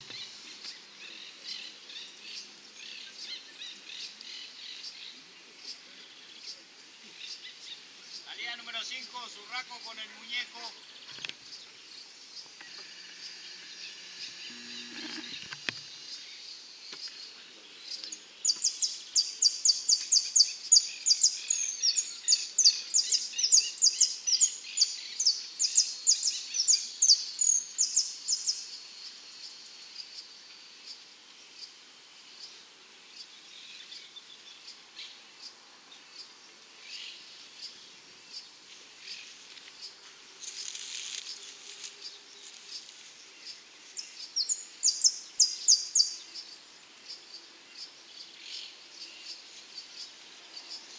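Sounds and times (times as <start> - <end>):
finch chirping: 18.4 - 28.8, 44.0 - 47.2.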